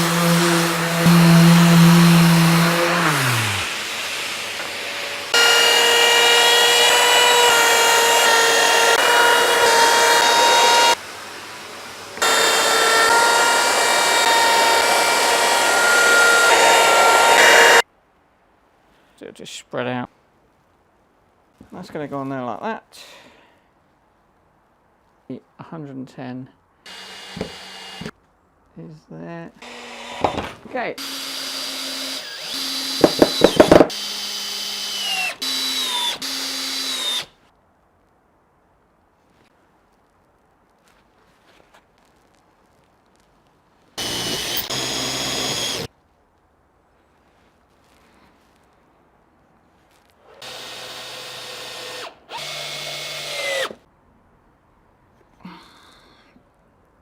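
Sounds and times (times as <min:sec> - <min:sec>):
electric power tool running: 0:00.0 - 0:11.0, 0:12.2 - 0:17.8, 0:29.6 - 0:30.4, 0:31.0 - 0:37.2, 0:44.0 - 0:45.9
sharp knocks: 0:33.0 - 0:33.9.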